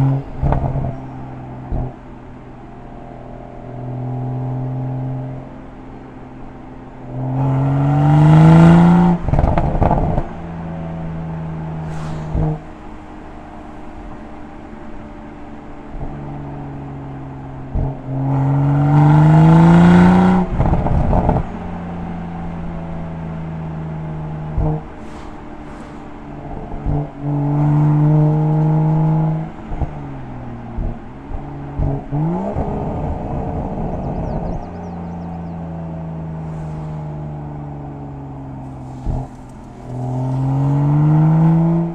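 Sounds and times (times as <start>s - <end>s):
car engine revving: 0.0s - 41.9s
exhaust crackles and pops: 0.1s - 2.2s, 9.1s - 15.0s, 20.4s - 21.7s, 29.7s - 41.9s.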